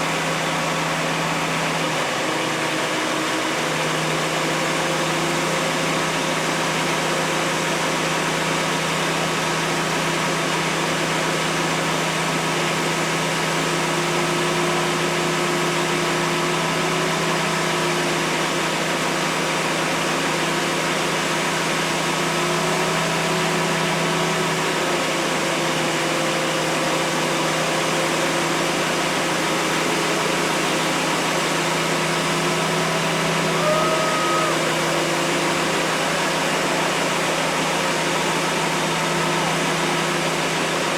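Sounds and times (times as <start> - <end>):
engine idling: 0.0 - 40.9
distant voices: 32.2 - 40.9.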